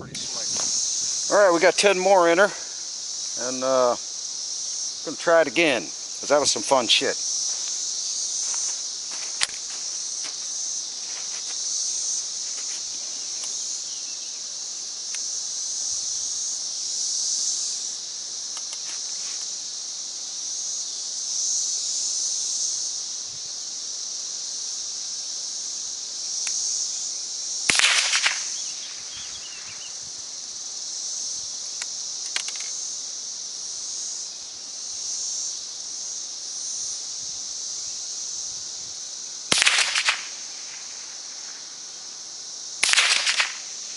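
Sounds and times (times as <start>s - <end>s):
insects buzzing: 0.0s - 43.9s
sharp cracks: 27.7s - 28.6s, 31.8s - 32.7s, 39.5s - 41.0s, 42.8s - 43.8s
faint clicks: 31.8s - 32.7s.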